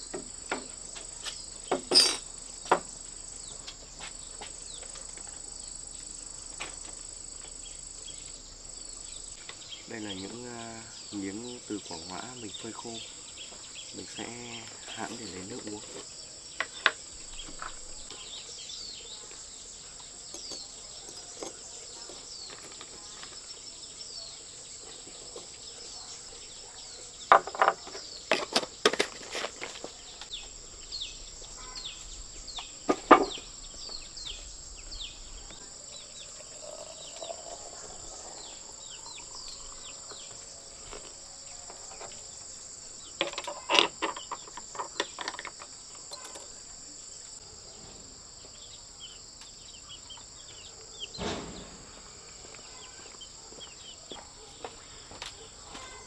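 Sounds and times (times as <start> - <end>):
insect chorus: 0.0 - 56.0
bird chirps: 30.0 - 47.2, 47.8 - 56.0
clattering knocks: 32.5 - 34.0, 51.2 - 52.4.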